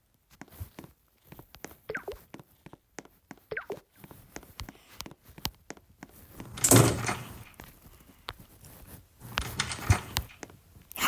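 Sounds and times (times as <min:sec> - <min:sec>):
scraping rattling slide: 0:06.4 - 0:07.6, 0:09.2 - 0:10.4.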